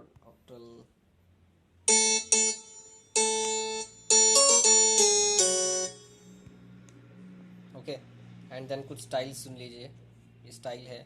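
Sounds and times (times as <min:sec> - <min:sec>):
harpsichord keyboard chords: 0:01.9 - 0:06.3.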